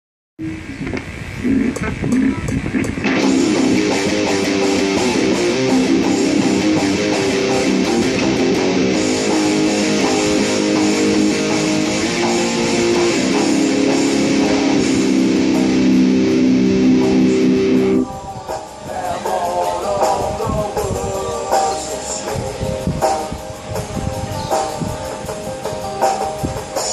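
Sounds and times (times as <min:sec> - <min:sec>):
electric guitar chords and notes: 0:00.4 - 0:26.9.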